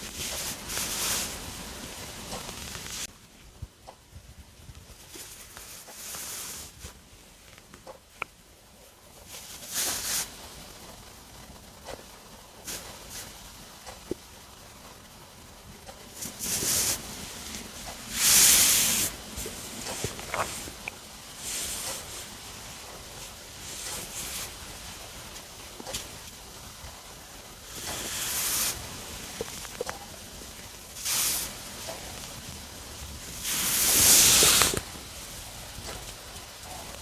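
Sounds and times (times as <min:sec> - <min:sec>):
stomach gurgling: 0:19.3 - 0:22.0.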